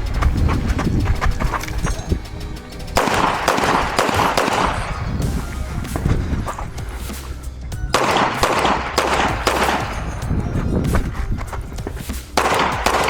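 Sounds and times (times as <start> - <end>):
background music with low beat: 0.0 - 13.0
pistol shots: 3.0 - 5.2, 8.0 - 10.0, 12.4 - 13.0.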